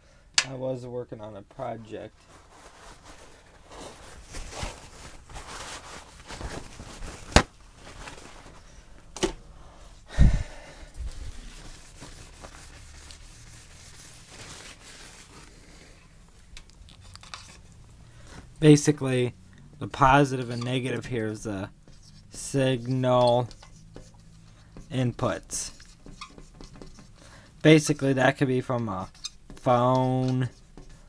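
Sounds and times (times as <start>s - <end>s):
faint rustling: 1.6s - 9.2s, 10.8s - 18.5s.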